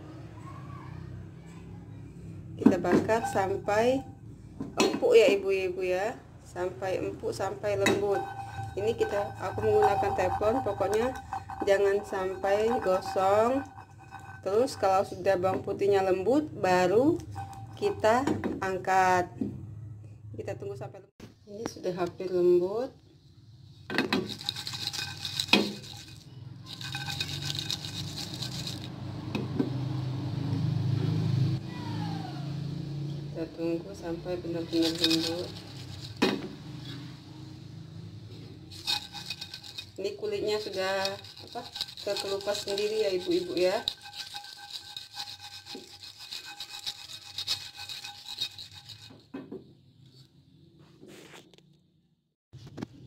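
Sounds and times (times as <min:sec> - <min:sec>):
utensil scraping frying pan: 0:02.9 - 0:04.0, 0:07.3 - 0:15.7, 0:17.2 - 0:18.2, 0:24.0 - 0:28.9, 0:34.7 - 0:36.9, 0:38.7 - 0:49.3.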